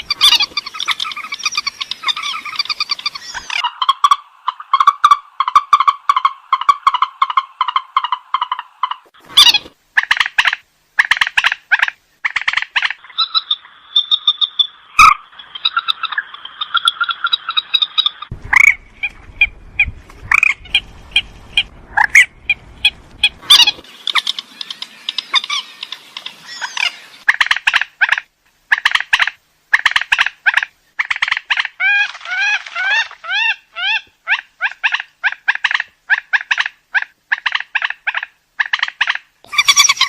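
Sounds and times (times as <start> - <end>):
rail bird calling: 0.0 - 40.0
low rumble: 18.3 - 23.6.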